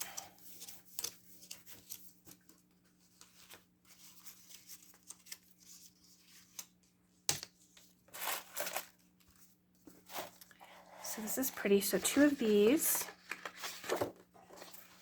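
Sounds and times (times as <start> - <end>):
paper rustling: 0.4 - 7.0, 11.4 - 15.0.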